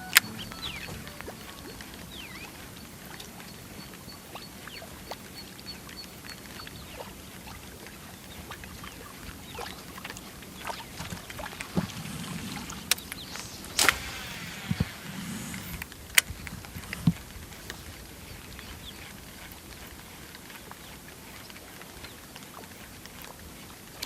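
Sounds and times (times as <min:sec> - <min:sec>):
high pulsing tone: 0:00.0 - 0:03.8
faint hiss: 0:00.0 - 0:23.0.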